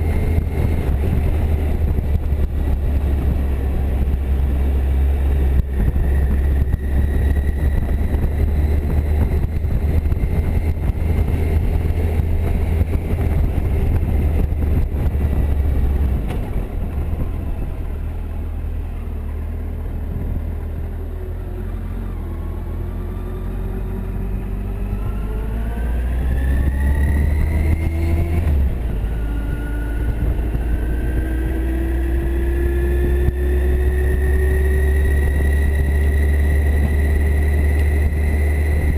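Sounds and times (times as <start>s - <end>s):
motorcycle engine accelerating: 0.0s - 38.9s
wind rumble on microphone: 0.0s - 38.9s.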